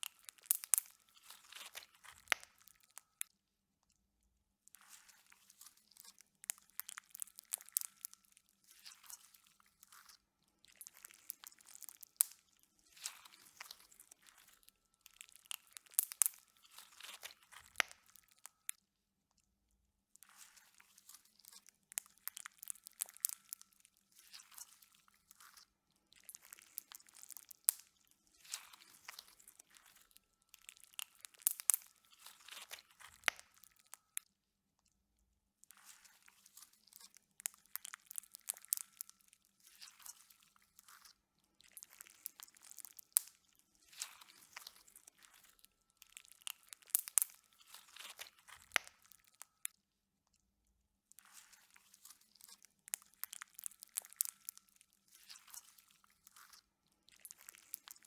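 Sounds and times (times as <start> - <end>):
slime squishing and popping: 0.0 - 3.0, 15.1 - 18.2, 30.6 - 33.9, 45.4 - 49.4.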